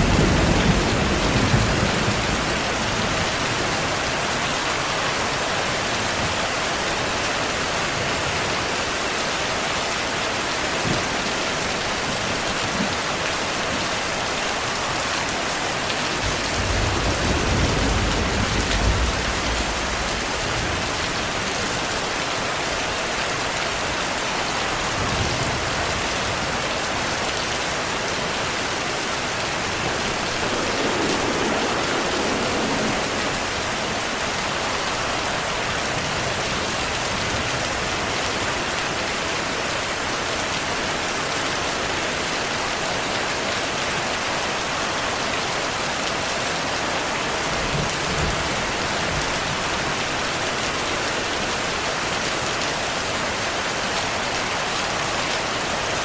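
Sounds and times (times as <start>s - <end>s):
distant thunder rumbling: 0.0s - 4.6s, 16.2s - 21.6s, 28.7s - 36.4s
heavy rain falling: 0.0s - 56.0s.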